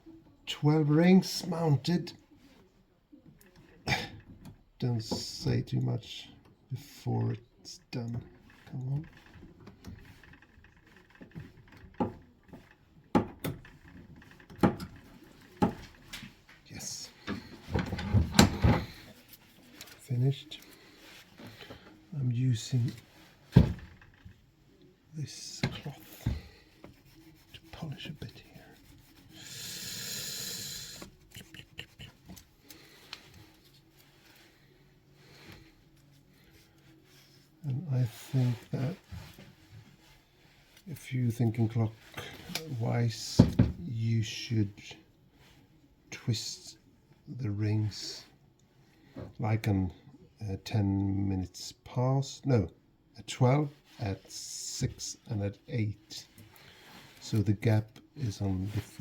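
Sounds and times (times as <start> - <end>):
light clicks and handling noises: 2.3 - 6.7, 7.4 - 29.4, 31.0 - 42.8
cloth rubbing on metal: 13.7 - 23.5, 25.2 - 40.8.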